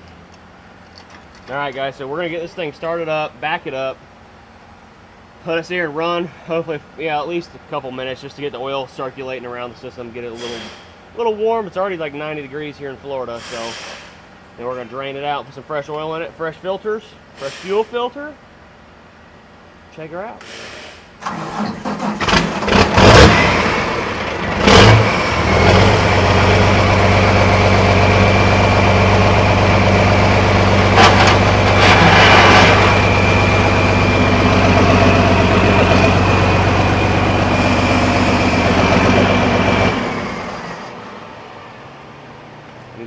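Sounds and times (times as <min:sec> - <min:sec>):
diesel engine starting and idling: 0:20.4 - 0:43.0.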